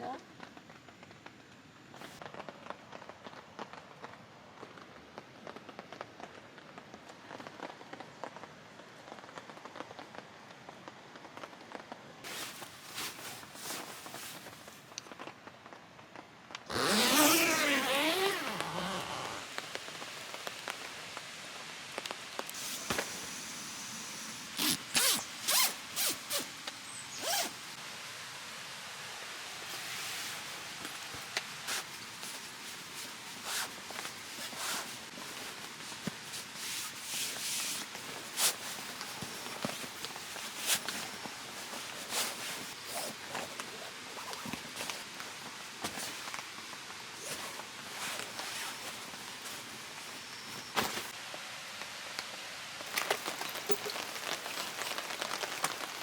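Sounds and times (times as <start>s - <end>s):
zipper rasping: 16.7s - 19.5s, 22.6s - 26.5s, 27.2s - 27.6s, 47.2s - 49.5s.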